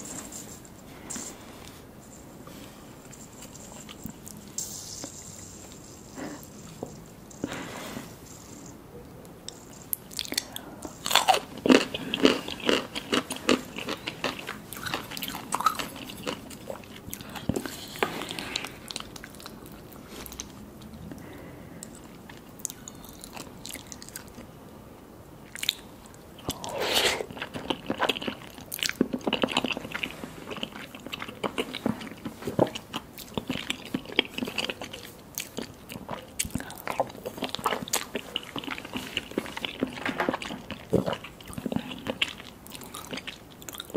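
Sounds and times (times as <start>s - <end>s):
crunchy bites and chewing: 9.9s - 20.5s, 25.6s - 43.9s.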